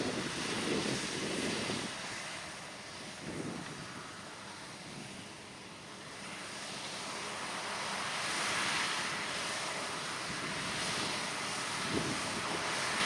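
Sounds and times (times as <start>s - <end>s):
wind on microphone: 0.0s - 2.0s, 3.2s - 3.9s, 10.3s - 13.0s.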